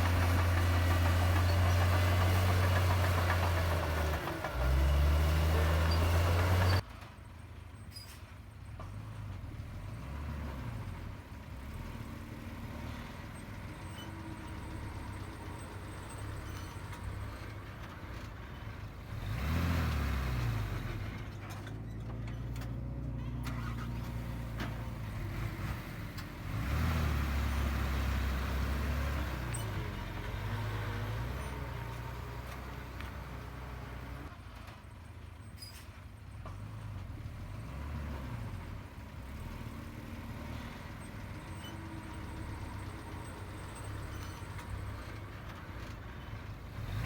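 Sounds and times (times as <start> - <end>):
heavy diesel engine revving: 0.0 - 6.8, 19.0 - 21.2, 23.6 - 34.3.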